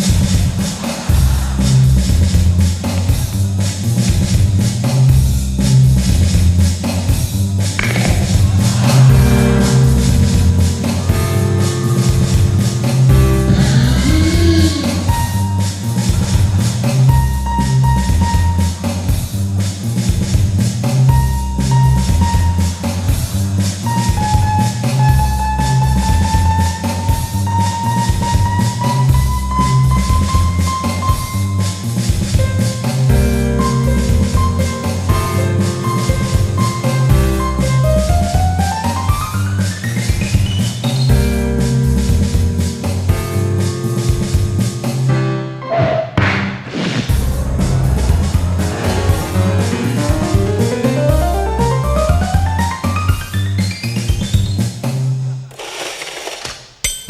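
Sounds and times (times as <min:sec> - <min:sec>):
band music with drums and bass: 0:00.0 - 0:55.1
pitched notes and sliding tones: 0:45.6 - 0:53.3.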